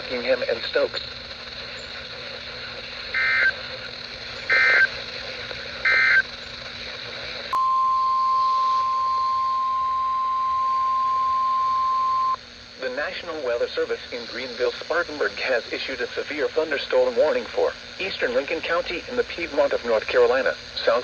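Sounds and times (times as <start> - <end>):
radio hiss: 0.0 - 21.0
warbling digital data bursts: 0.1 - 7.6.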